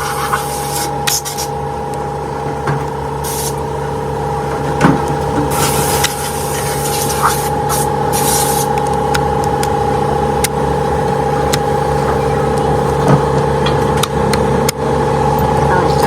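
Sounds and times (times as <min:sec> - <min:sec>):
hissing bursts: 0:00.0 - 0:01.6, 0:03.2 - 0:03.6, 0:05.5 - 0:08.8
workshop machinery humming: 0:00.0 - 0:16.0.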